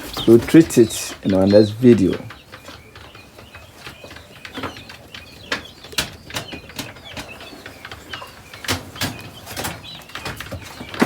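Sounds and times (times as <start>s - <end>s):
chicks cheeping: 0.0s - 11.0s.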